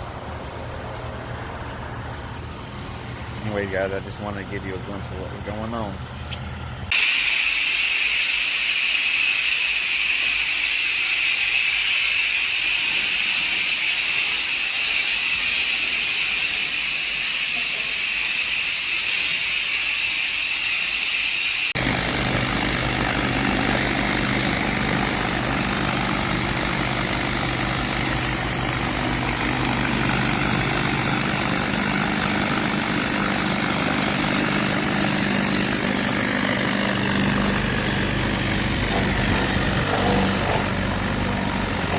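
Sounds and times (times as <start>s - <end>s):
engine running with low hum: 0.0s - 6.9s, 21.8s - 41.9s
pressure washer spray hissing: 6.9s - 41.9s.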